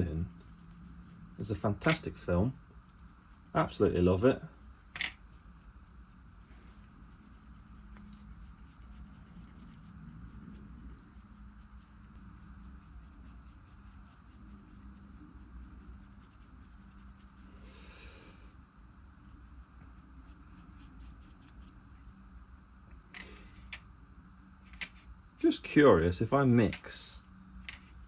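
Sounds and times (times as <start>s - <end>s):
paintbrush ticks and scratches: 0.0s - 17.6s, 19.2s - 21.9s
low room hum: 0.0s - 28.0s.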